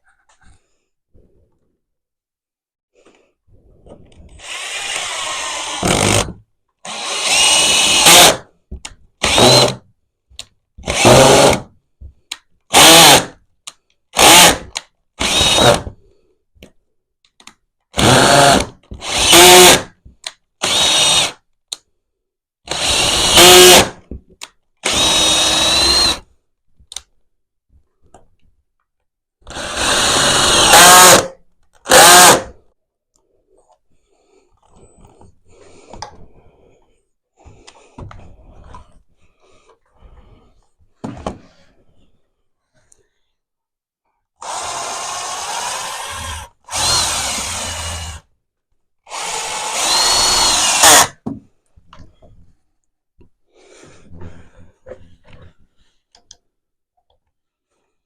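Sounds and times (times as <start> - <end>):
power drill bursts: 4.4 - 6.3, 6.9 - 8.4, 9.2 - 9.8, 14.2 - 15.8, 18.0 - 19.9, 20.6 - 21.4, 22.7 - 24.0, 24.8 - 26.2, 29.5 - 31.3, 31.9 - 32.5, 44.4 - 48.2, 49.1 - 51.1.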